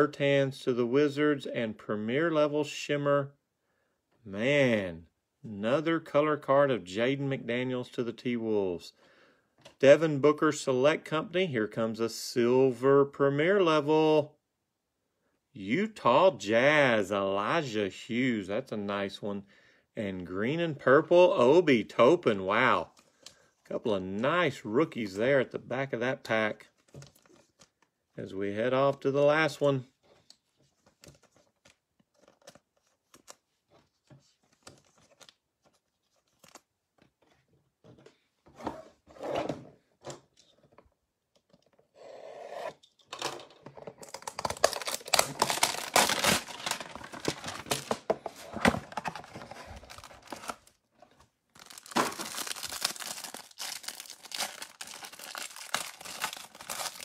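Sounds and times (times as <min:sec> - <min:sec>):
packaging tearing and crinkling: 0:44.0 - 0:50.8, 0:51.5 - 0:57.0.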